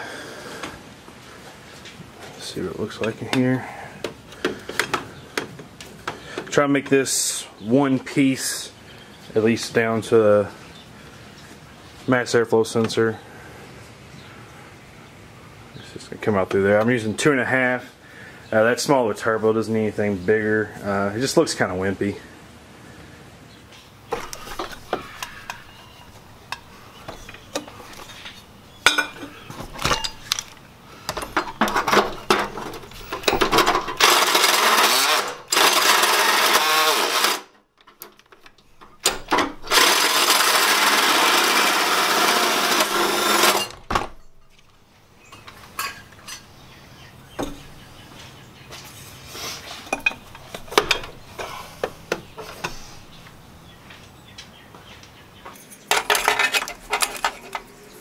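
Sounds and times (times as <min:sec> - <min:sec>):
tools clanking and tapping: 0:03.0 - 0:06.6, 0:24.1 - 0:34.2, 0:43.9 - 0:46.5, 0:47.3 - 0:47.8, 0:49.9 - 0:53.3, 0:55.4 - 0:57.8
drill cutting through sheet metal: 0:34.0 - 0:37.5, 0:39.7 - 0:43.7.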